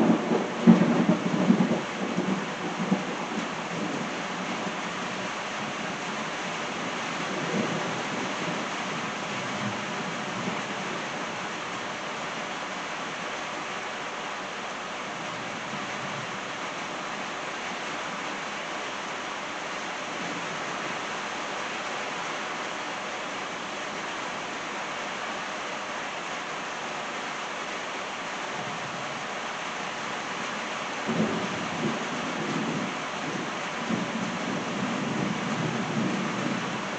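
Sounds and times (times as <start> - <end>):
rain falling on trees: 0.0 - 36.9
low thunder rumbling: 31.1 - 36.8.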